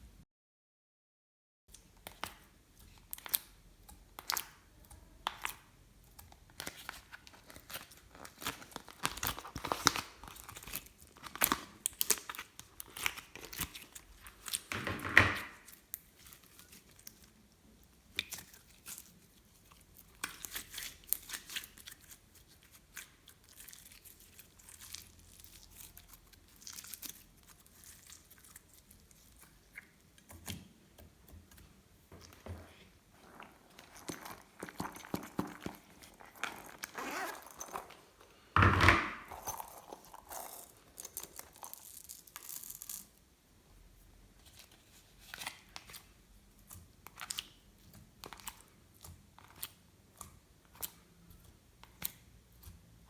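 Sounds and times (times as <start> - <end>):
sticky slime clicks and crackles: 45.5 - 52.3.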